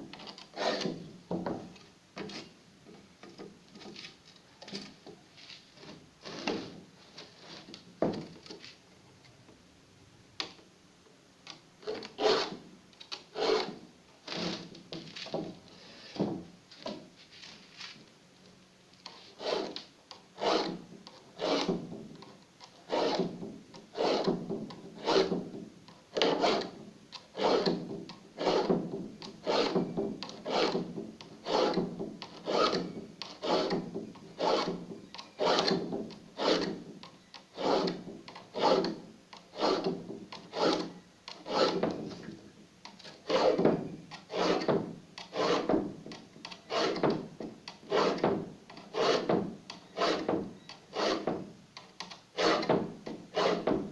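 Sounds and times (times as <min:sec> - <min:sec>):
file rasping on saw teeth: 0:19.4 - 0:19.8, 0:20.4 - 0:20.8, 0:21.4 - 0:21.7, 0:22.9 - 0:23.2, 0:24.0 - 0:24.3, 0:25.0 - 0:25.4, 0:26.2 - 0:26.7, 0:27.4 - 0:27.8, 0:28.4 - 0:28.7, 0:30.4 - 0:30.8, 0:31.4 - 0:31.8, 0:32.4 - 0:32.8, 0:33.4 - 0:33.8, 0:34.4 - 0:34.8, 0:35.4 - 0:35.8, 0:36.4 - 0:36.8, 0:37.6 - 0:38.9, 0:39.5 - 0:39.9, 0:40.5 - 0:41.9, 0:44.3 - 0:44.7, 0:45.3 - 0:45.7, 0:46.6 - 0:47.0, 0:47.9 - 0:48.3, 0:48.9 - 0:50.3, 0:50.9 - 0:51.3, 0:52.4 - 0:53.7.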